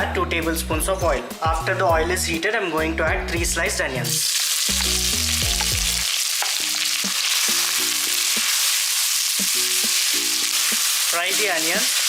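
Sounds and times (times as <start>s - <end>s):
onions sizzling in hot oil: 4.0s - 12.0s.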